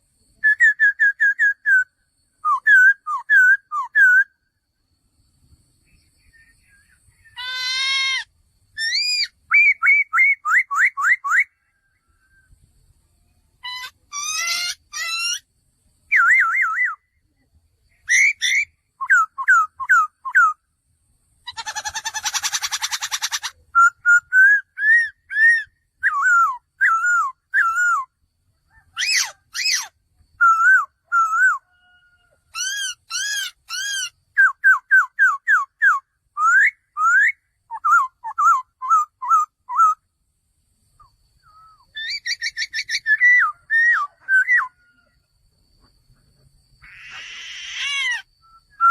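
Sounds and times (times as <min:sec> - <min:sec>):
bird whistled song phrases: 0:00.4 - 0:04.4, 0:05.9 - 0:12.6, 0:16.1 - 0:17.2, 0:18.0 - 0:20.6, 0:22.3 - 0:28.2, 0:29.0 - 0:31.7, 0:32.6 - 0:40.0, 0:41.0 - 0:45.0, 0:46.8 - 0:48.9
harsh rattling bird call: 0:06.9 - 0:12.0, 0:13.6 - 0:15.5, 0:18.0 - 0:18.8, 0:21.4 - 0:23.7, 0:28.7 - 0:30.0, 0:31.2 - 0:34.3, 0:41.6 - 0:45.2, 0:46.7 - 0:48.8.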